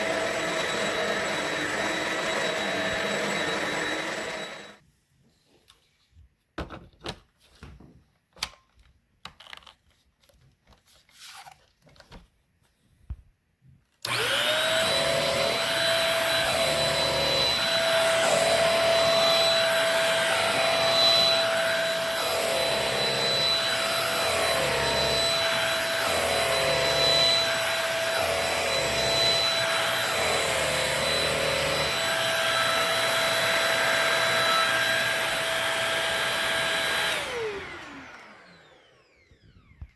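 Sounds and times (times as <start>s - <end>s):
vacuum motor whining: 0.0s - 4.8s, 14.0s - 39.9s.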